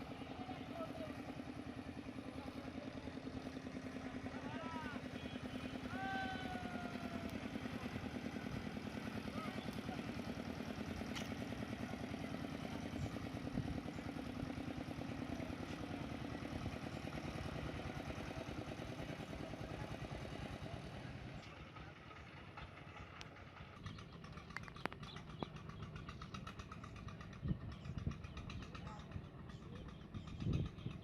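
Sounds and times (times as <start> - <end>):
small engine chugging: 0.0 - 31.0.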